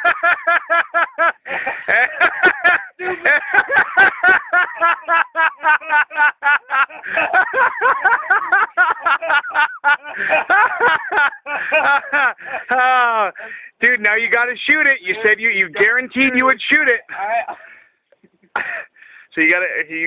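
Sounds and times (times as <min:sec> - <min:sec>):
people laughing: 0:00.0 - 0:13.4.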